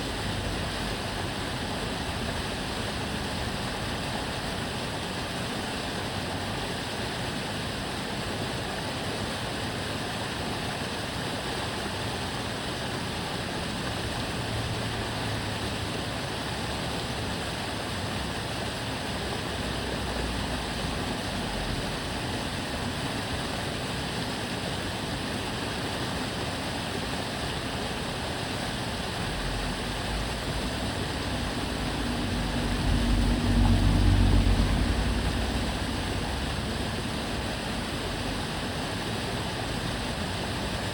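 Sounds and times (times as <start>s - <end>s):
canal water babbling: 0.0s - 40.9s
passing vehicle rumble: 29.2s - 40.1s.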